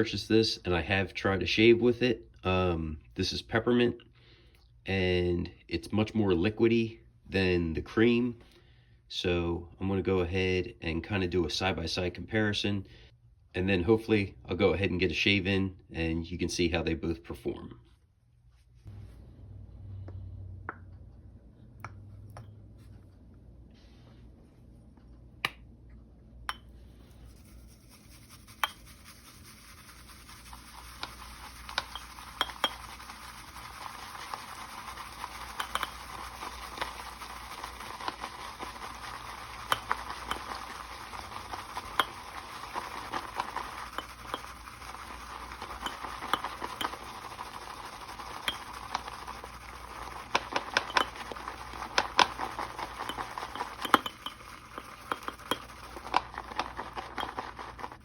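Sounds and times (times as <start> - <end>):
shave brush swishing lather: 27.1 - 58.0
brush clicking against bowl: 28.5 - 29.0, 30.0 - 58.0.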